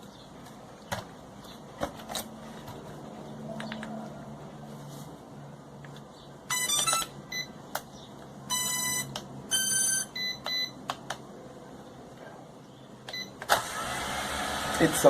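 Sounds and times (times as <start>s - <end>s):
electronic beeps: 6.5s - 7.6s, 8.5s - 10.8s.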